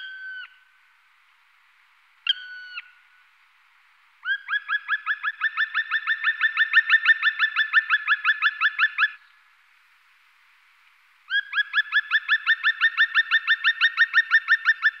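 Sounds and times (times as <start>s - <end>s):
woodpecker rapid call series: 4.2s - 9.2s, 11.3s - 15.0s.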